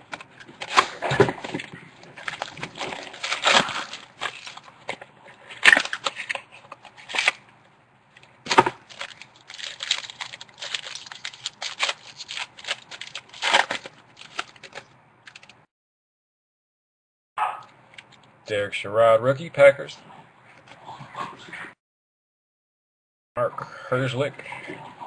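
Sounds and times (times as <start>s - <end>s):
card packaging tearing and crinkling: 0.1s - 7.4s, 8.5s - 15.6s.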